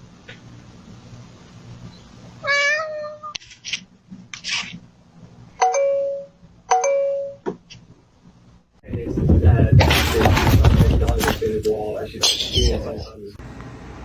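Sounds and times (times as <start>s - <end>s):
cat meowing: 2.4s - 3.4s.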